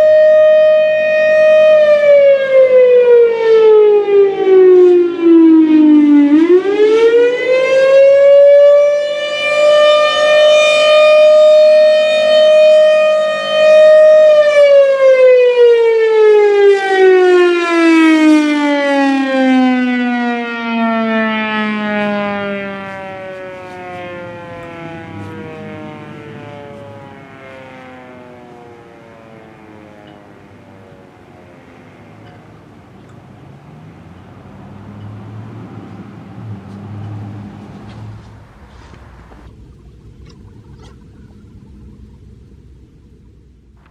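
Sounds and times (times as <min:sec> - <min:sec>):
loud mechanical siren: 0:00.0 - 0:32.9.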